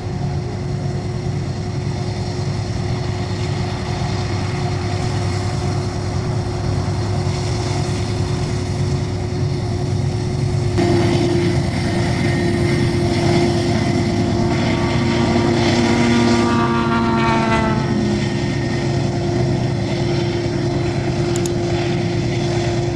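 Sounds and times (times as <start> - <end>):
diesel locomotive engine drone: 0.0 - 22.9
whine sliding down in pitch: 10.8 - 22.9.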